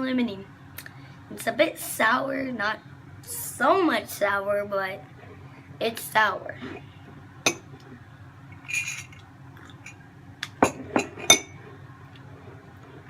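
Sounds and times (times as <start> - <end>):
spoon clinking against a ceramic mug: 8.6 - 9.2.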